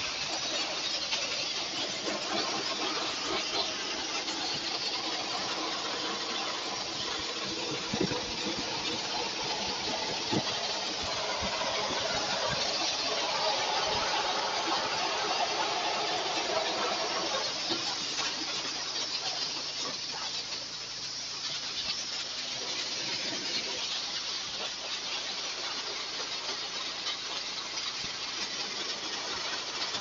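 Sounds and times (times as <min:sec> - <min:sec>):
abrasive blasting gun hissing: 0:00.0 - 0:20.4.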